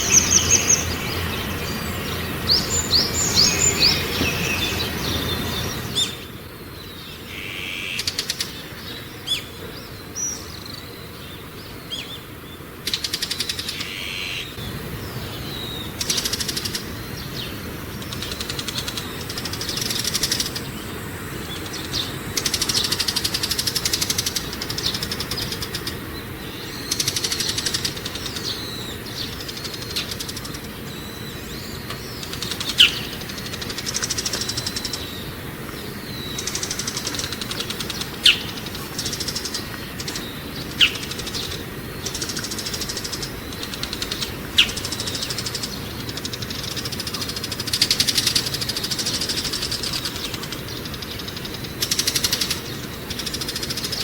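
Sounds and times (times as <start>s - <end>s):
buzzy rattling bird trills: 0.0s - 54.0s
songbirds chirping: 0.0s - 54.0s
sharp bird call: 7.3s - 8.2s.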